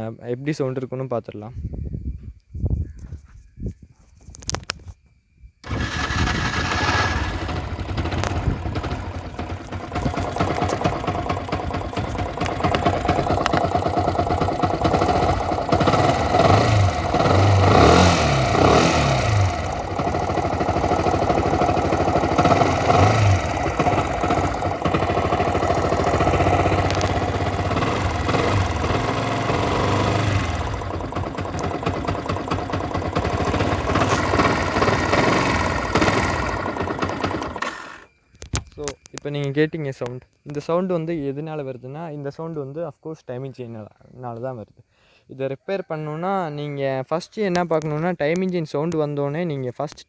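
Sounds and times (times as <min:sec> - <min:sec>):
motorcycle engine revving: 0:05.6 - 0:38.1.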